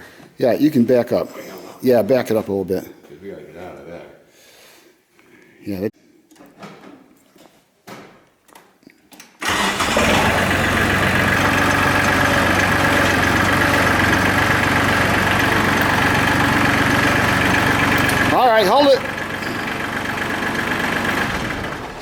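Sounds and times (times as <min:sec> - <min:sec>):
diesel engine starting and running: 0:09.4 - 0:22.0.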